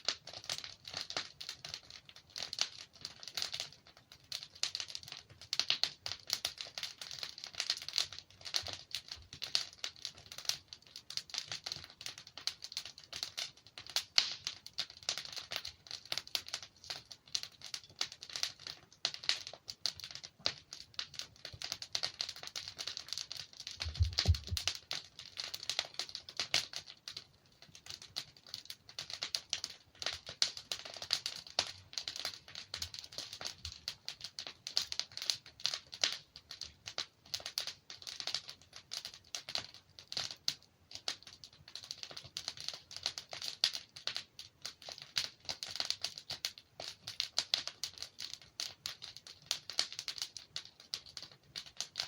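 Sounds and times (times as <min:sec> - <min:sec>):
wood fire crackling: 0:00.0 - 0:52.0
low thump: 0:23.9 - 0:24.7.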